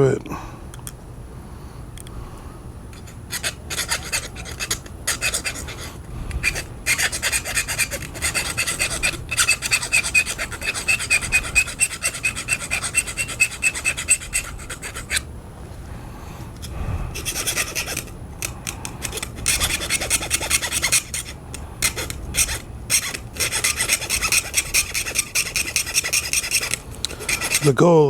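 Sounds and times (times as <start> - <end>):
file rasping on metal: 3.0 - 15.3, 17.1 - 27.8.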